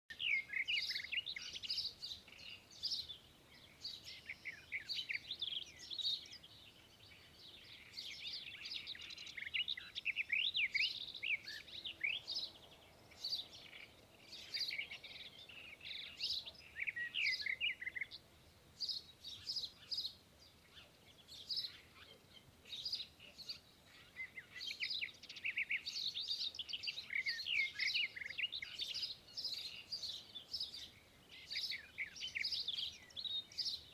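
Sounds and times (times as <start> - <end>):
small birds chirping: 0.1 - 33.9.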